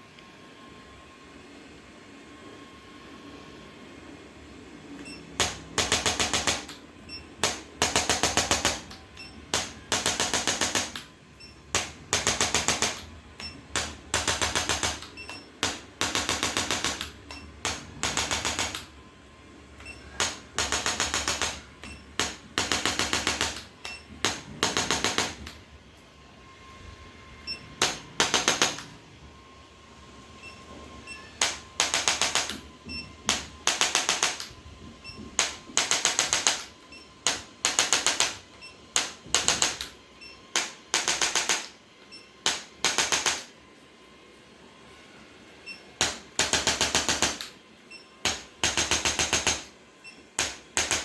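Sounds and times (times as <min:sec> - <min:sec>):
rapid clicking bursts: 0:05.4 - 0:06.8, 0:07.4 - 0:11.1, 0:11.7 - 0:19.0, 0:20.2 - 0:25.5, 0:31.4 - 0:32.6, 0:33.3 - 0:34.5, 0:35.4 - 0:39.9, 0:40.5 - 0:41.7, 0:42.4 - 0:43.5, 0:46.0 - 0:47.5, 0:48.2 - 0:49.7, 0:50.4 - 0:51.0.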